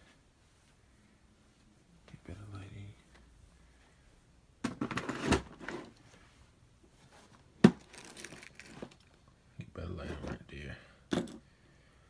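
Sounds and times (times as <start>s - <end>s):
rustling and clattering: 4.6s - 6.3s.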